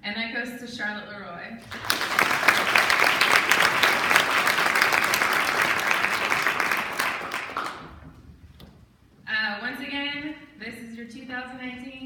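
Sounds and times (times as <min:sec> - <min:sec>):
audience applauding: 0:01.6 - 0:08.1.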